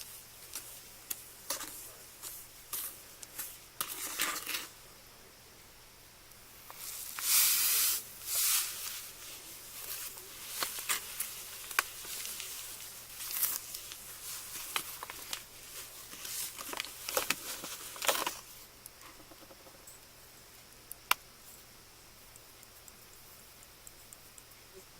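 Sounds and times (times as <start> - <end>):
sharp clicks: 20.7 - 21.3.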